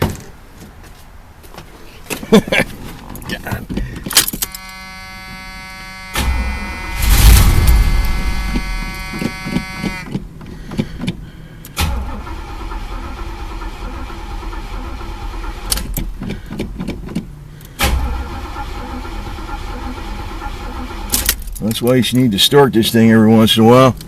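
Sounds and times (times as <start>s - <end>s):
starter cranking engine: 11.8s - 16.8s, 17.6s - 21.6s.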